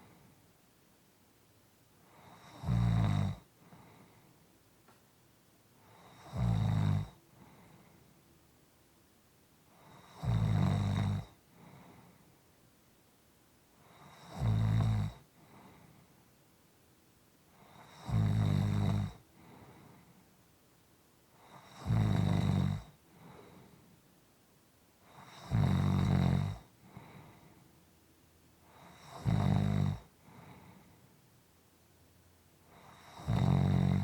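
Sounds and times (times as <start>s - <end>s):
loud snoring: 2.1s - 3.5s, 5.9s - 7.2s, 9.8s - 11.4s, 13.9s - 15.2s, 17.6s - 19.2s, 21.4s - 23.0s, 25.1s - 26.7s, 28.7s - 30.1s, 32.7s - 34.0s
soft breath out: 3.6s - 4.6s, 7.3s - 8.3s, 11.5s - 12.5s, 15.3s - 16.3s, 19.3s - 20.4s, 23.0s - 24.0s, 26.8s - 27.8s, 30.2s - 31.2s.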